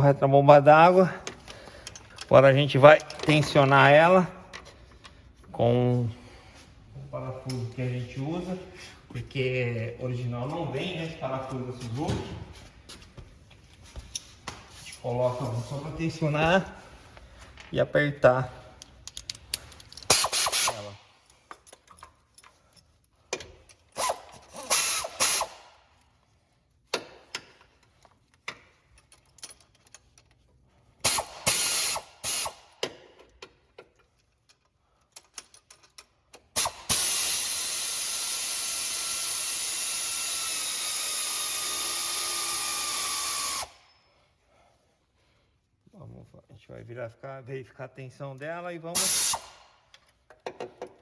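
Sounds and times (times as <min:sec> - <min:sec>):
ratchet wrench clicking: 0:18.8 - 0:22.0, 0:23.4 - 0:25.6, 0:31.1 - 0:32.9, 0:34.5 - 0:43.8, 0:49.0 - 0:50.1
power tool running: 0:20.1 - 0:20.9, 0:36.6 - 0:43.8.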